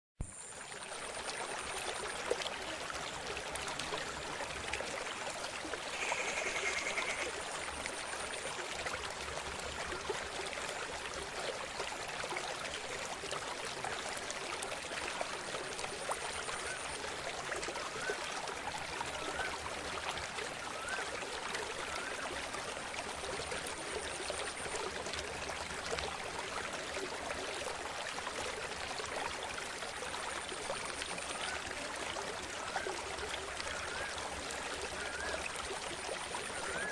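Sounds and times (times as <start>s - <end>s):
river water flowing: 0.2s - 36.9s
faint wavering calls: 5.8s - 7.4s, 32.6s - 35.5s.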